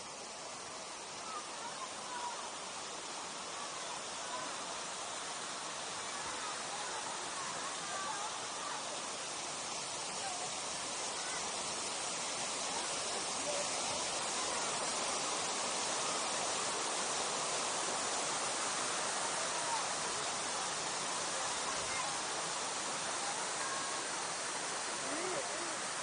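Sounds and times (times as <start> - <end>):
water rushing: 0.0 - 26.0
faint voices: 0.8 - 26.0.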